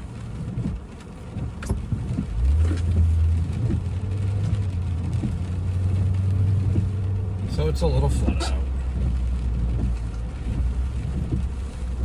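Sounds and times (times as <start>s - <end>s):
car engine rumble from inside: 0.0s - 12.0s
faint taps: 8.9s - 11.9s.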